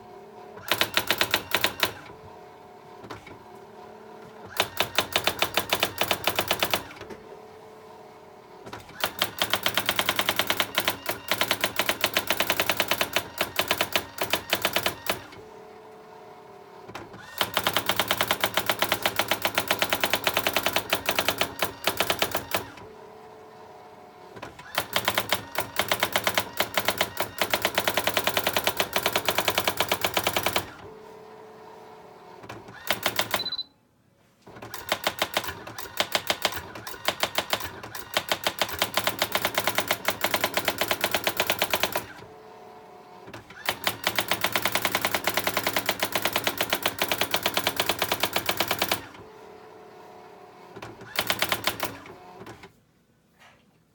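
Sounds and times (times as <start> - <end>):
typewriter rapid strikes: 0.6 - 2.1, 4.5 - 7.0, 9.0 - 15.3, 17.2 - 22.8, 24.7 - 30.8, 32.8 - 33.6, 34.7 - 42.2, 43.6 - 49.2, 51.1 - 52.0
typewriter motor hum: 0.6 - 2.3, 4.2 - 7.2, 8.6 - 15.5, 16.8 - 23.0, 24.2 - 30.9, 32.4 - 33.6, 34.5 - 42.4, 43.0 - 49.6, 50.6 - 52.7.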